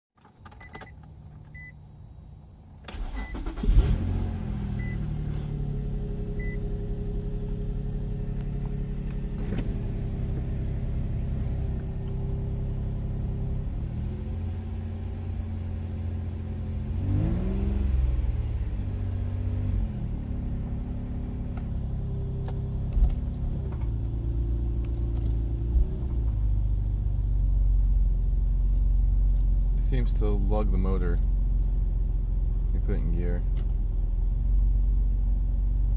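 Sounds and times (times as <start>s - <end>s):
car engine starting and idling: 0.2s - 35.9s.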